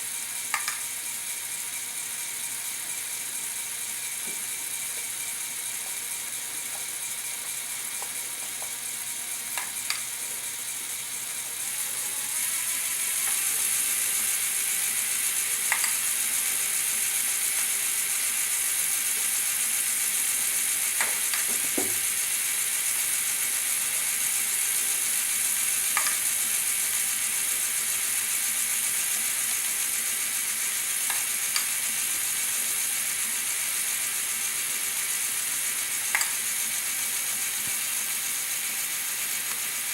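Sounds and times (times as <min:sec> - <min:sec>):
motors and plastic gears whirring: 0:00.0 - 0:39.9
sharp click: 0:00.5 - 0:00.8, 0:36.1 - 0:36.4.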